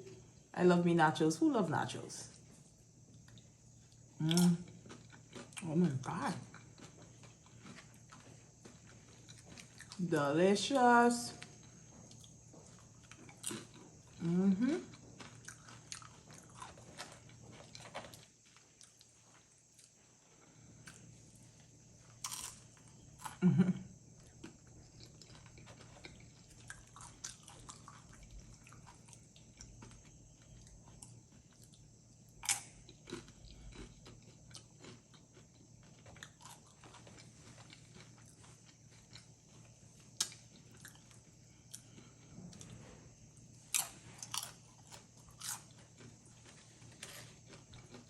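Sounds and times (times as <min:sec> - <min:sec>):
wet chewing: 0:03.2 - 0:10.0, 0:11.5 - 0:20.0
tortilla chips crunching: 0:03.2 - 0:10.1, 0:11.5 - 0:20.0, 0:20.8 - 0:41.2, 0:43.6 - 0:48.0.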